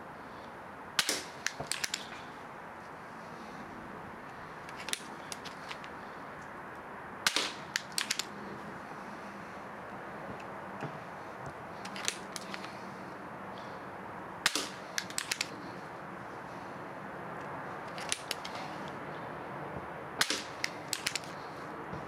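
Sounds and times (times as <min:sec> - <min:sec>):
air pistol cracks: 0:01.0 - 0:02.3, 0:04.7 - 0:06.5, 0:07.2 - 0:08.4, 0:11.8 - 0:12.8, 0:14.4 - 0:15.7, 0:17.9 - 0:19.0, 0:20.2 - 0:21.4
light clicks: 0:10.3 - 0:12.8.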